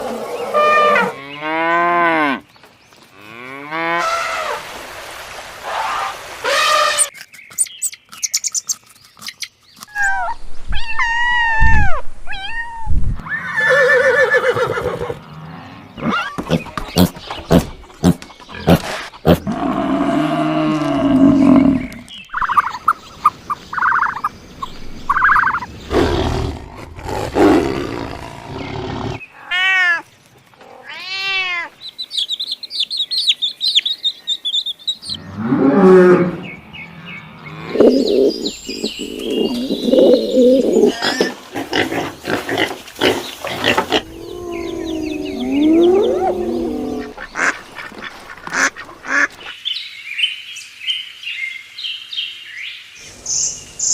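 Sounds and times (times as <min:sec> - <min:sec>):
low animal roars: 0:19.4 - 0:22.1, 0:44.0 - 0:47.1
animal calls: 0:35.1 - 0:49.3.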